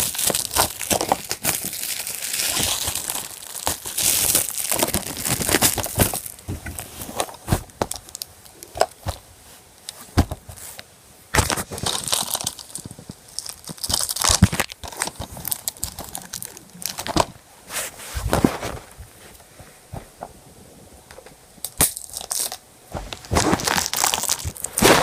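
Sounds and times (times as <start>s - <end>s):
plastic wrapping crinkling and tearing: 0.0s - 9.2s, 11.4s - 17.4s, 21.6s - 25.0s.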